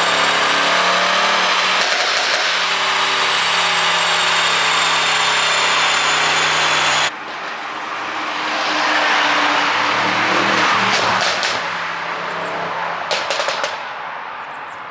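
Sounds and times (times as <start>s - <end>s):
car engine revving: 0.0s - 13.8s.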